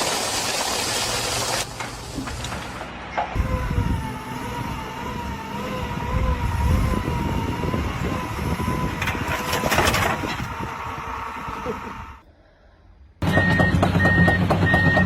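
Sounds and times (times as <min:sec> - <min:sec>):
heavy machine engine rumbling: 0:00.3 - 0:12.2.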